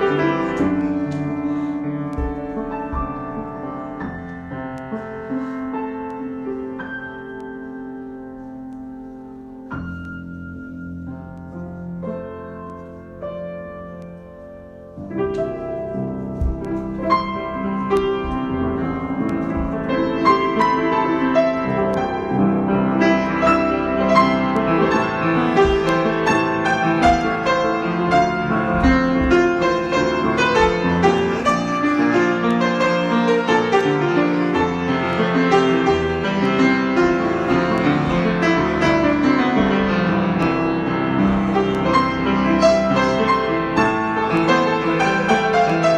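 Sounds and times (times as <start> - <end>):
solo piano improvisation: 0.0 - 45.9.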